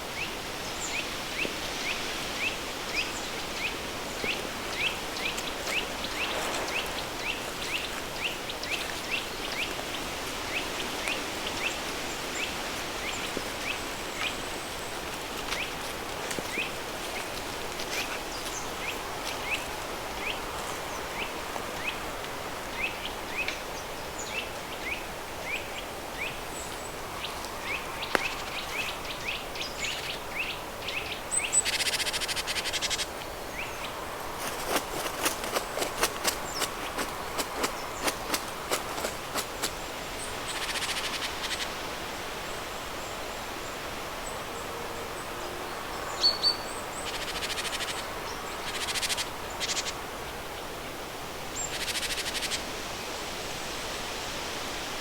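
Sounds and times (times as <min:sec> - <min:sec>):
river stream flowing: 0:00.0 - 0:34.9.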